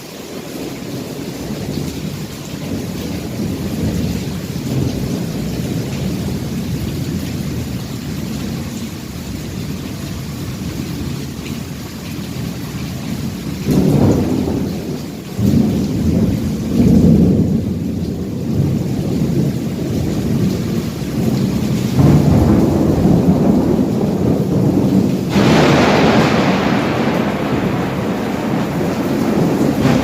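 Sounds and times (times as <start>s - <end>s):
steady rain: 0.0s - 30.0s
thunder rumbling: 0.6s - 30.0s
bright thunder crash: 21.9s - 30.0s.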